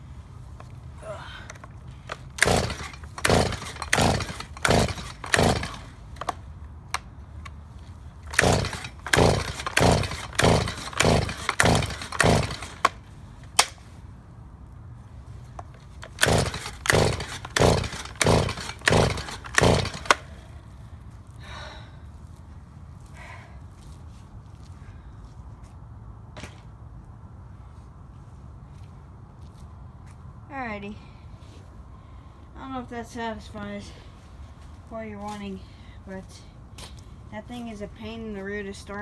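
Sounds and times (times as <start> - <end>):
chainsaw engine cranking: 1.4 - 7.6, 8.2 - 13.9, 15.6 - 20.5
recoil starter cord yanks: 1.5 - 7.6, 8.2 - 13.9, 15.6 - 20.4.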